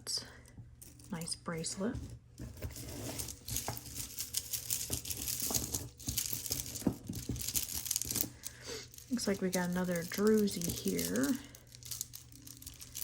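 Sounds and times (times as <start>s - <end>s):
jewelry clicking and rattling: 0.4s - 13.0s
packaging crinkling: 2.6s - 13.0s.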